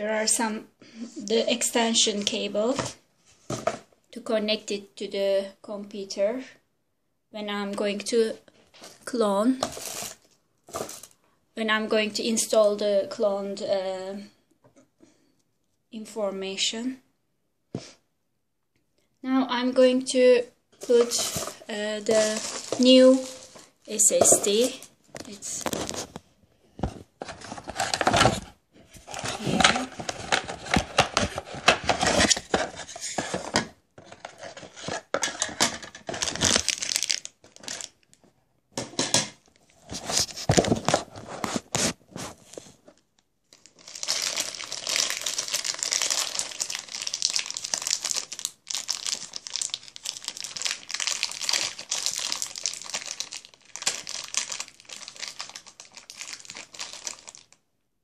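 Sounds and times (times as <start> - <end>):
plastic packaging crinkling and tearing: 8.8 - 11.2, 20.8 - 26.2, 27.2 - 38.1, 43.5 - 57.6.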